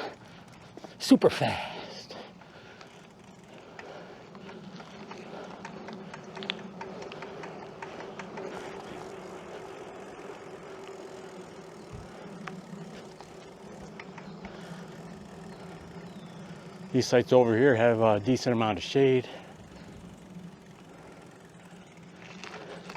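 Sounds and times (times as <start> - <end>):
bicycle ticks and rattles: 0.0 - 22.9
low motor hum: 0.0 - 22.9.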